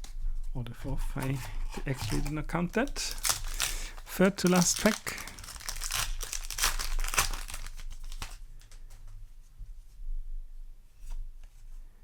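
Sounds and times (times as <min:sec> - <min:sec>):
foil wrapper crinkling: 0:00.9 - 0:08.7.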